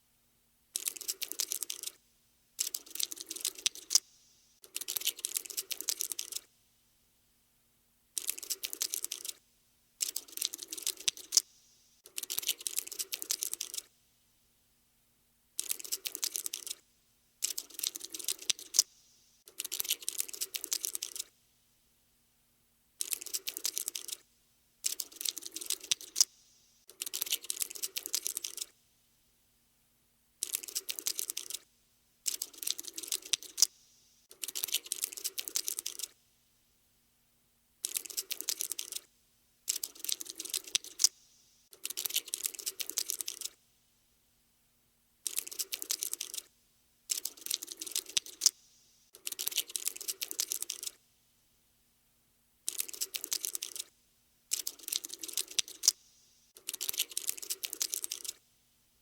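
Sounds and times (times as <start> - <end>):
cockroach scuttling clicks: 0.8 - 2.0, 2.6 - 6.5, 8.2 - 9.4, 10.0 - 13.9, 15.6 - 16.8, 17.4 - 21.3, 23.0 - 24.2, 24.8 - 26.3, 26.9 - 28.7, 30.4 - 31.6, 32.2 - 36.1, 37.8 - 39.1, 39.7 - 43.6, 45.2 - 46.5, 47.1 - 48.6, 49.2 - 51.0, 52.7 - 53.9, 54.5 - 56.0, 56.6 - 58.4.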